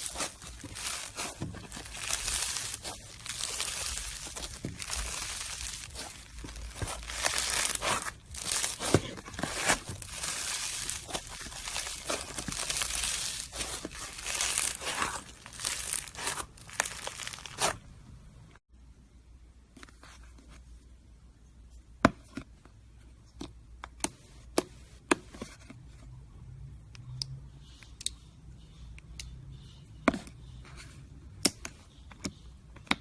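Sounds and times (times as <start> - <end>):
slime crackling and popping: 0.0 - 17.8.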